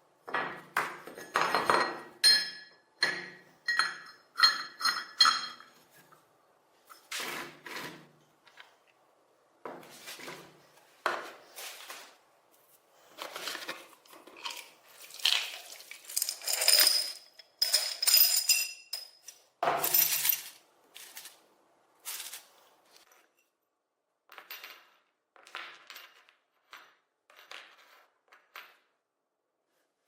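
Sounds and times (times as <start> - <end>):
small metal parts clinking: 14.4 - 20.6.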